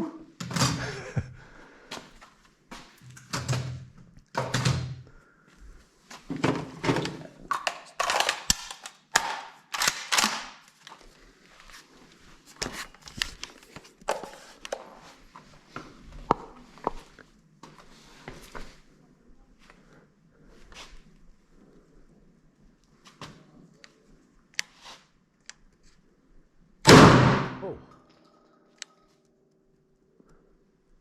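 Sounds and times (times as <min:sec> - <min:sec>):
firearms being handled and reloaded: 0:00.4 - 0:01.1, 0:02.8 - 0:05.1, 0:06.2 - 0:11.8, 0:12.4 - 0:15.6.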